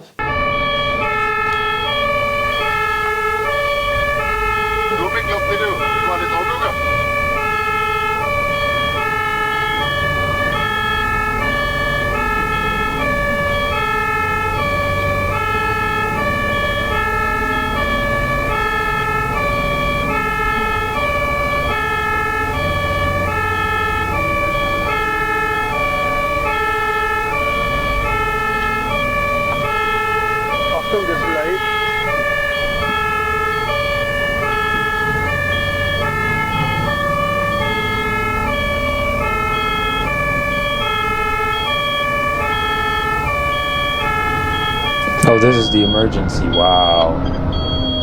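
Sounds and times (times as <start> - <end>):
ambulance two-tone siren: 0.0 - 48.0
road traffic rumble: 0.0 - 48.0.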